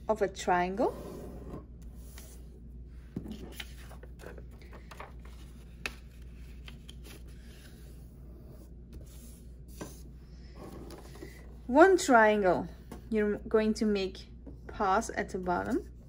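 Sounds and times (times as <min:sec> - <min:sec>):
steady low hum: 0:00.0 - 0:16.0
paper rustling and scraping: 0:03.3 - 0:08.2.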